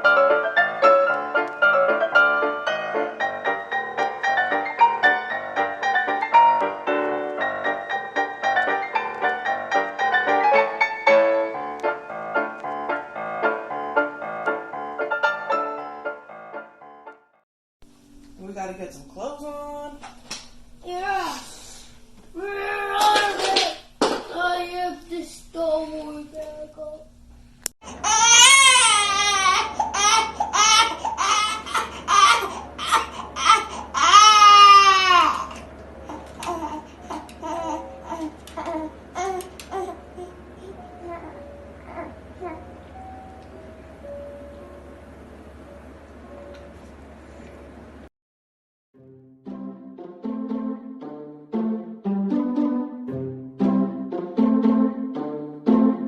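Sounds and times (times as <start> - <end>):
quick piano music: 0.0 - 17.3, 40.7 - 46.8, 49.0 - 56.0
baby crying: 27.9 - 42.7.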